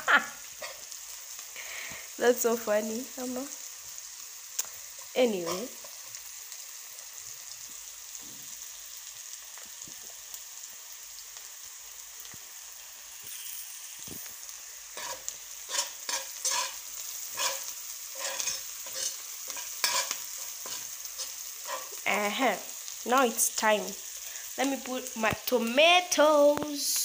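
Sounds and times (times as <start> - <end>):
onions sizzling in oil: 0.0 - 27.0
spoon scraping a pan: 0.5 - 0.9, 5.0 - 6.2, 14.9 - 22.1.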